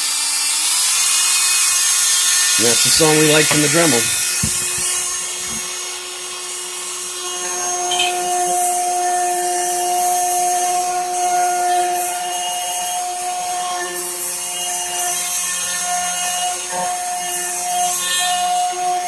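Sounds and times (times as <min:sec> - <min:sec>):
high tone of bit cutting wood: 0:01.1 - 0:05.7.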